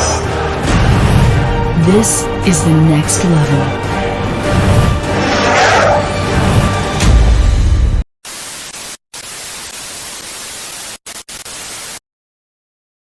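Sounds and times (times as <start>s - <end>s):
commercial music: 0.0s - 8.0s
television static hiss: 8.3s - 12.0s.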